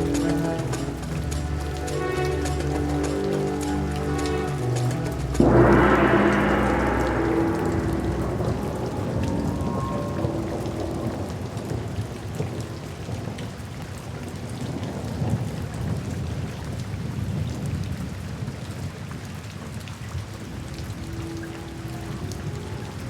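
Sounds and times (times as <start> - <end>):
low rumble: 0.0 - 11.8
rain falling: 0.0 - 23.0.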